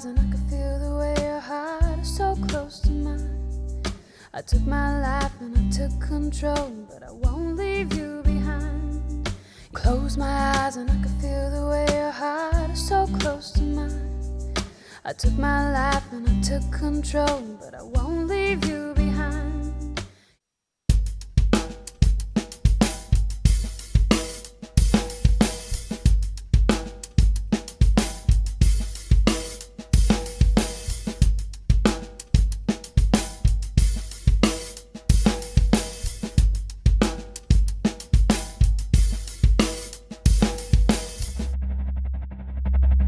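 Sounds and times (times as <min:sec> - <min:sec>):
drum kit beat: 0:00.0 - 0:00.4, 0:01.0 - 0:03.2, 0:06.6 - 0:08.6, 0:17.3 - 0:20.1, 0:20.9 - 0:41.6.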